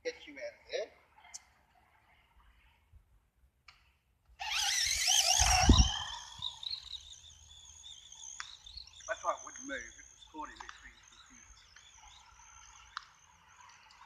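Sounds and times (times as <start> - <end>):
electric motor whining: 4.4 - 14.0.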